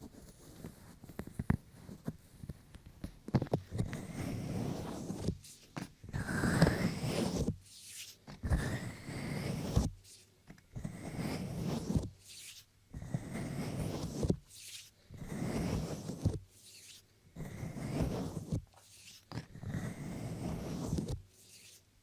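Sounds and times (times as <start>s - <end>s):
brushing strokes on microphone: 17.7s - 19.3s, 20.1s - 21.9s.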